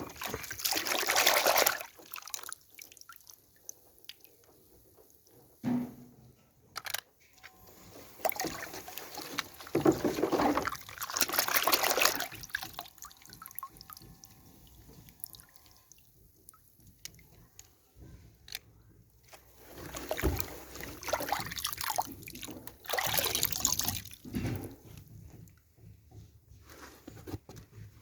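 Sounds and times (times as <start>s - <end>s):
liquid sloshing and trickling: 0.0s - 5.4s, 7.7s - 17.7s, 19.2s - 25.5s
small clicks and knocks: 6.7s - 7.6s.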